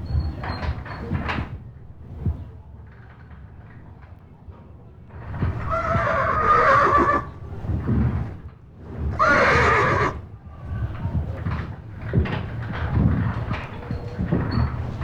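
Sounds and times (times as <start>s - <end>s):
horse whinnying: 5.5s - 7.4s, 9.1s - 10.2s.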